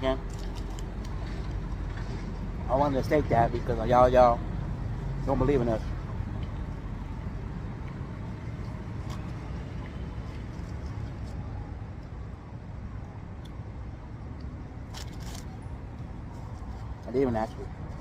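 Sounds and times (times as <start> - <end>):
vehicle rumble: 0.0 - 18.0.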